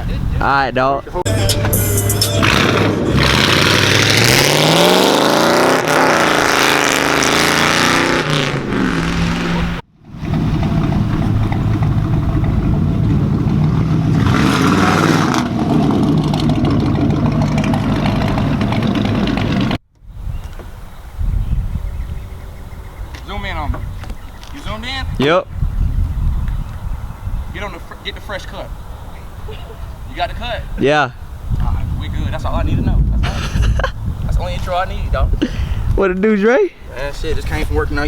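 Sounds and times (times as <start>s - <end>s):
engine accelerating hard: 2.3s - 19.8s.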